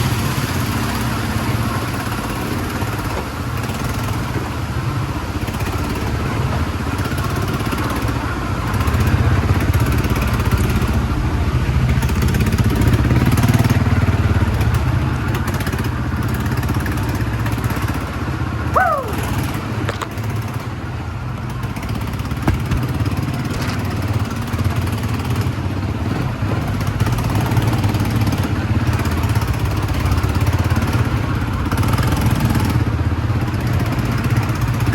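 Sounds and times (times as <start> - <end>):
atv engine running: 0.0 - 34.9
short falling whistle: 18.8 - 19.3.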